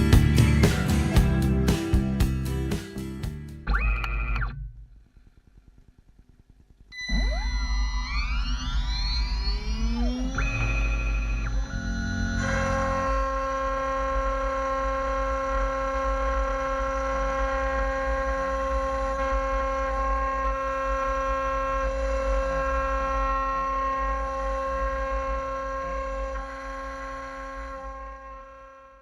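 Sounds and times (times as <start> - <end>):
router spindle whine: 7.0 - 29.0.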